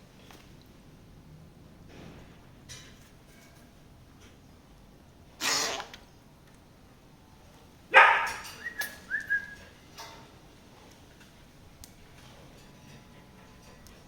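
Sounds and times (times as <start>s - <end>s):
parrot squawking: 5.4s - 5.9s, 7.9s - 8.9s.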